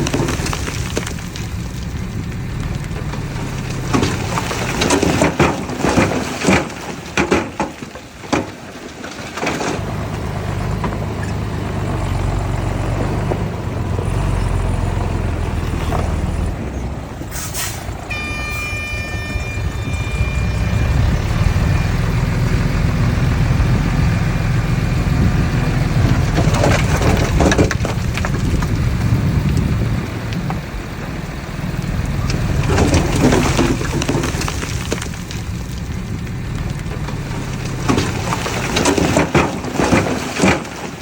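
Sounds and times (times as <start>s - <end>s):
diesel engine rumble: 0.0s - 41.0s
short hiss: 17.3s - 18.0s
high multi-pitched tone: 18.1s - 23.4s.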